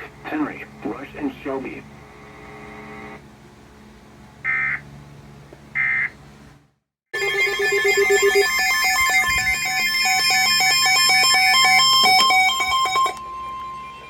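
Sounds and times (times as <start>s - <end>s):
digital data tone bursts: 7.2s - 14.0s
electronic ringing tune: 7.2s - 14.0s.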